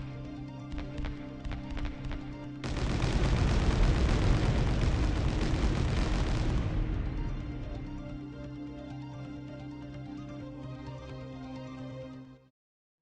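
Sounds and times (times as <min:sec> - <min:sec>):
background music: 0:00.0 - 0:12.5
loud explosion sound effect: 0:02.6 - 0:08.2.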